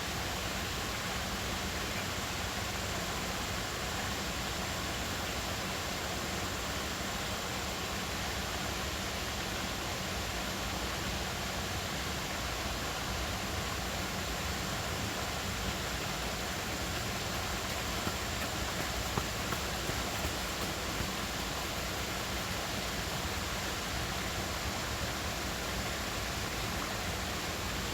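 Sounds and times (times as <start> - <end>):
river water rushing: 13.7 - 25.2
water splashes: 14.2 - 24.2.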